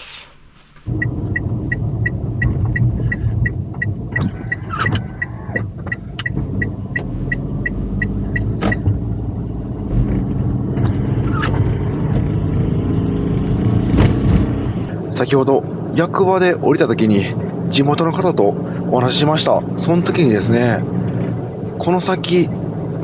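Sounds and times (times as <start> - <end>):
vehicle engine running: 0.9 - 23.0
rapid electronic beeps: 5.9 - 8.8.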